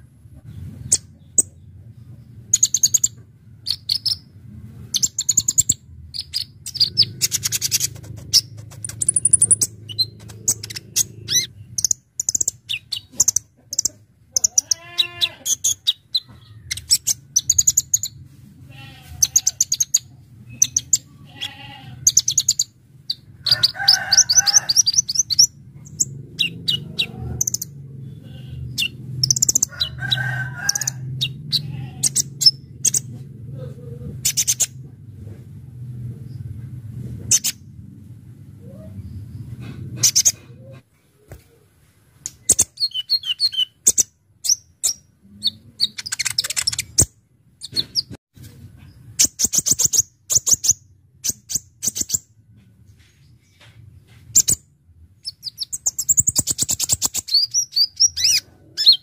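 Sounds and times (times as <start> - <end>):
steady low hum: 0.0 - 14.9, 30.9 - 42.2
sunbird chirping and trilling: 2.5 - 4.3, 5.0 - 18.2, 19.2 - 33.1, 42.4 - 48.1, 55.2 - 59.0.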